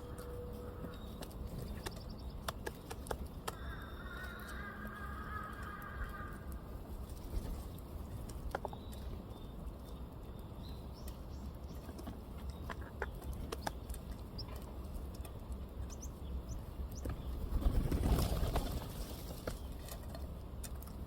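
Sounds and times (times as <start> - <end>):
birds pecking: 0.0 - 21.0
wings flapping: 17.1 - 20.0.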